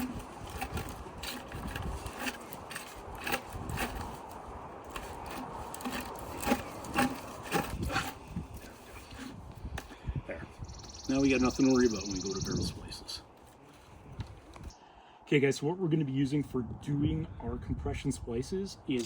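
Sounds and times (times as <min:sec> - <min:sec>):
plastic scraping over cable: 0:00.0 - 0:09.5.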